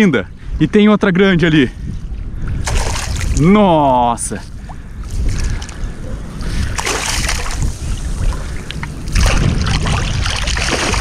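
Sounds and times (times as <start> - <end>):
wind rumble on microphone: 0.0 - 11.0
water splashing from net hauling: 2.6 - 3.6, 6.4 - 11.0.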